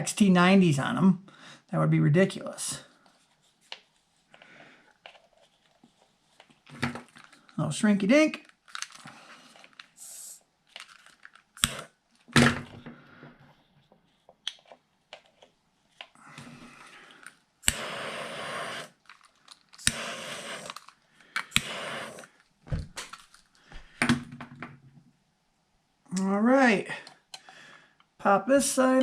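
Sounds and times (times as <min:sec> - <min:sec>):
plastic crinkling and rustling: 0:04.9 - 0:10.0, 0:10.6 - 0:12.8, 0:18.9 - 0:19.8, 0:22.4 - 0:24.0.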